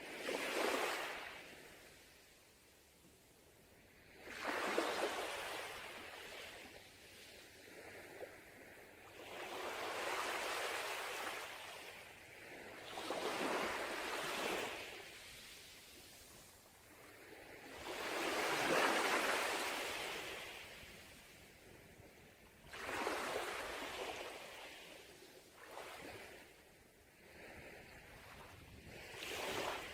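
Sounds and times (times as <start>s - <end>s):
sea waves breaking on beach: 9.1s - 21.5s, 22.6s - 26.6s, 27.2s - 29.9s.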